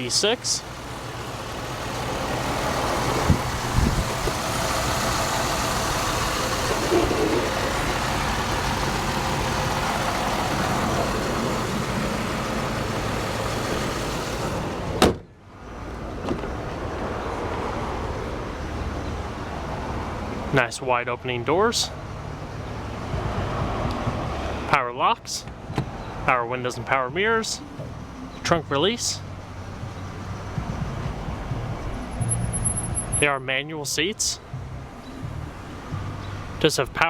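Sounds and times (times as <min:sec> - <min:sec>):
car engine idling: 0:00.0 - 0:15.0
car hood slamming shut: 0:14.9 - 0:15.3.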